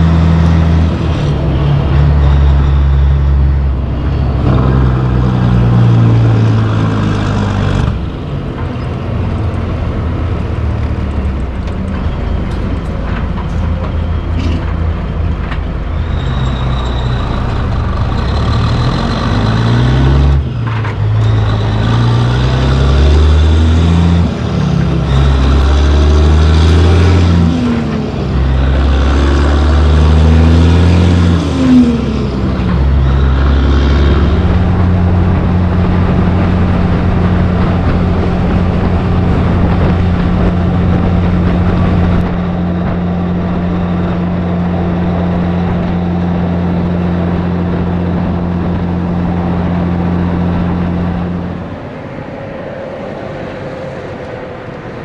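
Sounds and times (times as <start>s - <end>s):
heavy diesel engine shifting gears: 0.0s - 55.0s.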